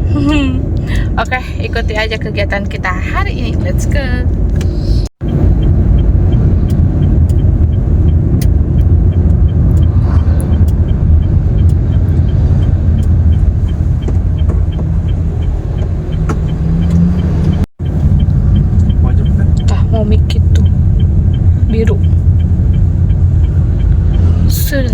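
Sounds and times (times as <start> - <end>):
road and engine rumble: 0.0 - 24.9
faint regular ticking: 0.7 - 24.9.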